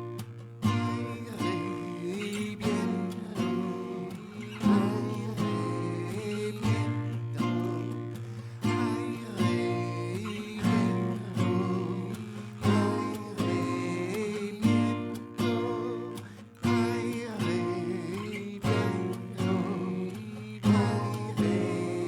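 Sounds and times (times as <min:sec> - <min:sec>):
acoustic guitar strumming: 0:00.0 - 0:22.0
person singing: 0:00.7 - 0:22.0.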